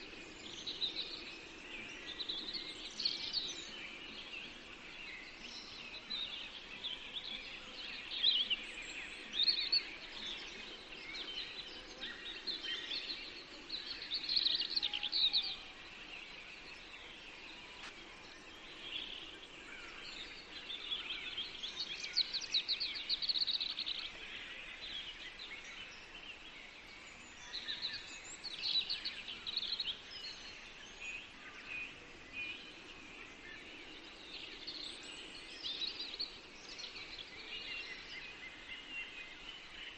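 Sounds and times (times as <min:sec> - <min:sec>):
faint steady background noise: 0:00.0 - 0:39.9
songbirds chirping and trilling: 0:00.0 - 0:39.9.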